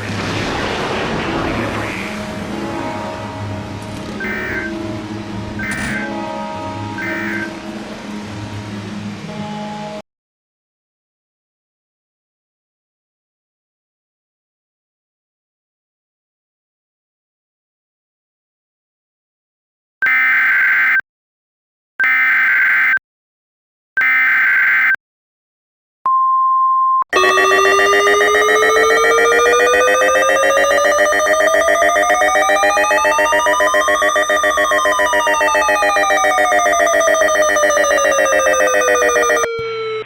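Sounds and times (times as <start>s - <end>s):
buzzing alarm tone rising and falling: 4.2s - 4.8s, 5.6s - 6.2s, 7.0s - 7.6s, 22.0s - 23.0s, 24.0s - 25.0s, 27.1s - 40.0s
screeching data bursts: 4.2s - 4.8s, 5.6s - 6.2s, 7.0s - 7.5s, 27.2s - 40.0s
steady alert tone: 4.2s - 4.8s, 5.6s - 6.2s, 7.0s - 7.6s, 27.1s - 40.0s.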